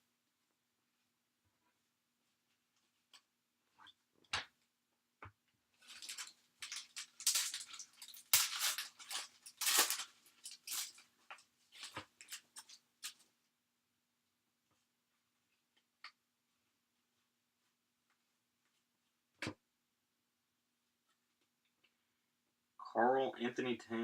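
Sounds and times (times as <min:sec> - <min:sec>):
wrapper crinkling and tearing: 0:05.8 - 0:11.1.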